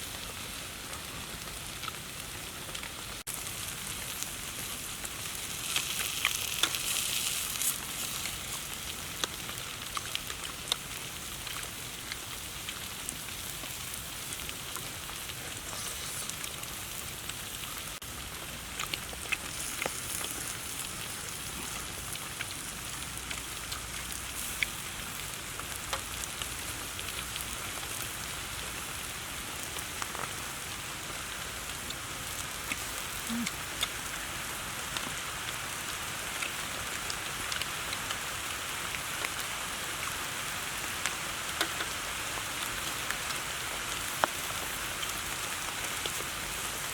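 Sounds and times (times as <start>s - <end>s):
food sizzling and popping: 0.0s - 46.9s.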